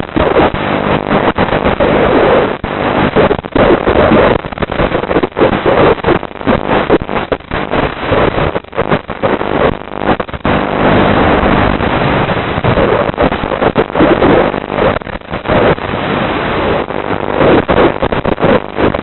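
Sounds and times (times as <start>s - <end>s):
drone propellers buzzing: 0.0s - 15.8s
wind rushing over microphone: 0.0s - 19.0s.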